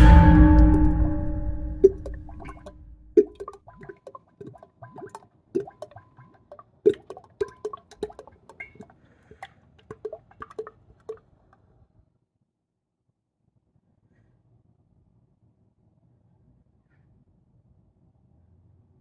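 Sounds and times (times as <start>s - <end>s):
sparse plucked notes: 0.0s - 3.3s.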